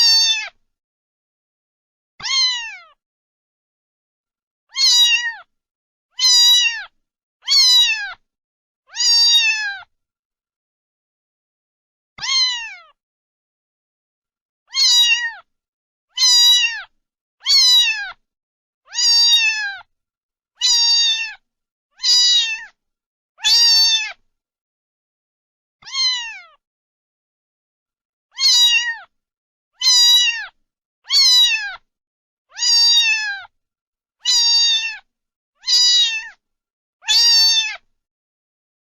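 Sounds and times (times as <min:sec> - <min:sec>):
cat meowing: 0:00.0 - 0:00.6, 0:02.2 - 0:03.0, 0:04.7 - 0:05.5, 0:06.2 - 0:08.2, 0:08.9 - 0:09.9, 0:12.2 - 0:13.0, 0:14.7 - 0:15.5, 0:16.1 - 0:18.2, 0:18.9 - 0:19.9, 0:20.6 - 0:21.4, 0:22.0 - 0:22.8, 0:23.4 - 0:24.2, 0:25.8 - 0:26.6, 0:28.3 - 0:29.1, 0:29.8 - 0:31.9, 0:32.5 - 0:33.5, 0:34.2 - 0:36.4, 0:37.0 - 0:37.9.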